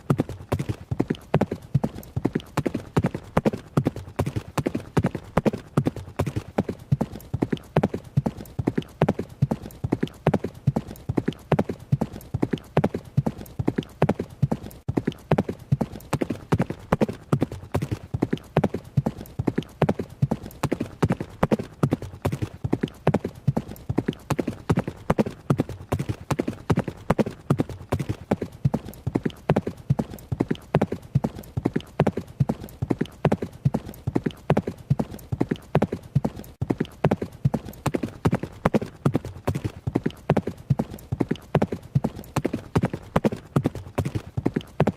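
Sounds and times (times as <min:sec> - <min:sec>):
horse hooves running: 0:00.0 - 0:44.9.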